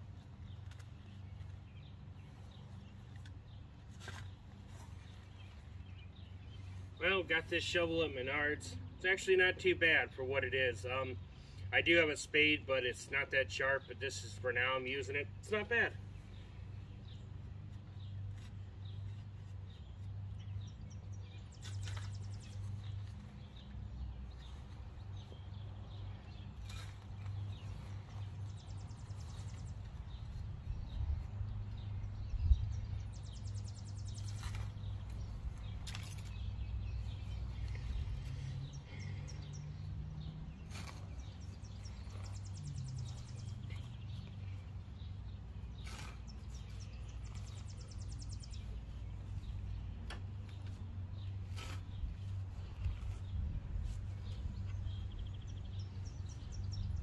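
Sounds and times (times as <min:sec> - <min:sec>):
steady low hum: 0:00.0 - 0:07.4, 0:08.2 - 0:57.0
birds chirping: 0:00.0 - 0:57.0
shovel digging into soil: 0:40.6 - 0:42.5, 0:45.7 - 0:47.8, 0:51.4 - 0:52.2.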